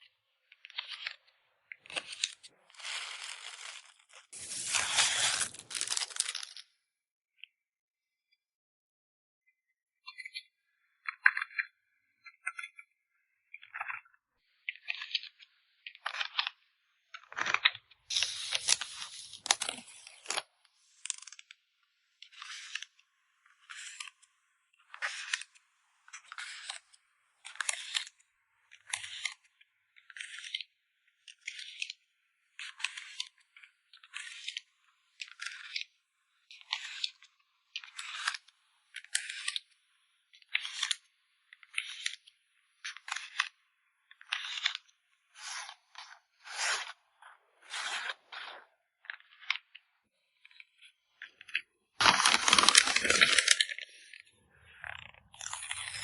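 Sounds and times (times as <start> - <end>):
plastic packaging crinkling: 1.9 - 6.6, 17.4 - 21.4, 52.0 - 54.1, 54.9 - 56.0.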